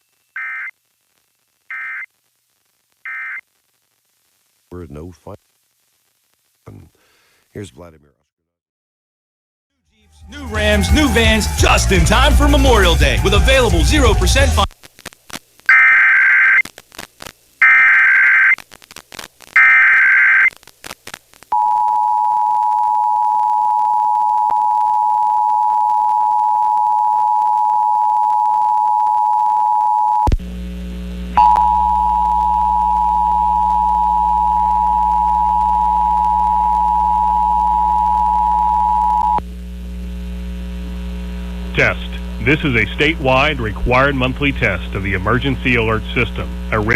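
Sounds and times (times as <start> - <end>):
mains hum: 0.0 - 8.2, 10.0 - 46.9
digital data bursts: 10.4 - 14.7.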